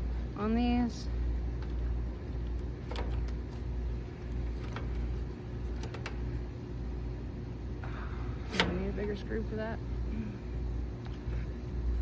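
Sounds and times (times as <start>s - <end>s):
faint hum: 0.0s - 12.0s
steady low rumble: 0.0s - 12.0s
clicks and taps of parts: 5.7s - 6.2s.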